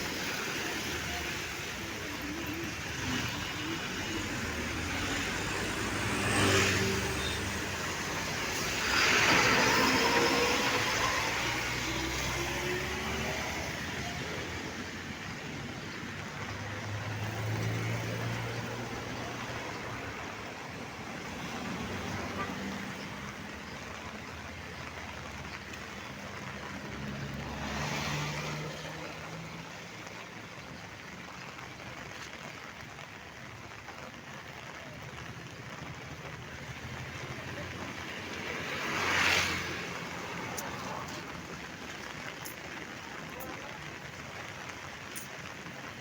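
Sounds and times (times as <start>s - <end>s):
heavy rain: 0.0s - 46.0s
traffic on wet street: 0.0s - 46.0s.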